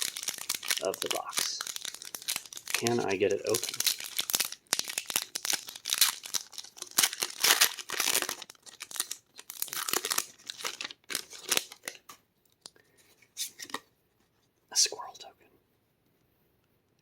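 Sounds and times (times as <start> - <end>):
foil wrapper tearing and crinkling: 0.0 - 12.0.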